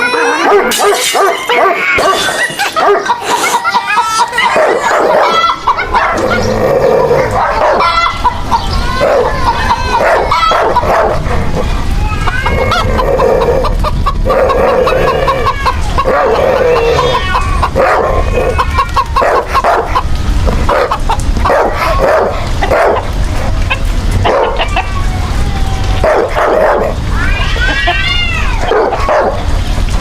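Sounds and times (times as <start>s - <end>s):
chickens clucking: 0.0s - 25.1s
dog barking: 0.4s - 3.2s, 4.5s - 6.3s, 7.3s - 8.1s, 10.0s - 11.3s, 17.8s - 18.1s, 19.2s - 20.0s, 20.7s - 23.1s, 24.2s - 24.7s, 26.0s - 27.0s, 28.6s - 29.4s.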